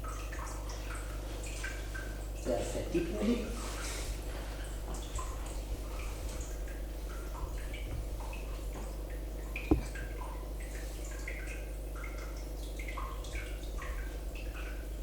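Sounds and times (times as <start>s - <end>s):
steady low hum: 5.0s - 12.0s
sharp knock: 9.7s - 10.0s.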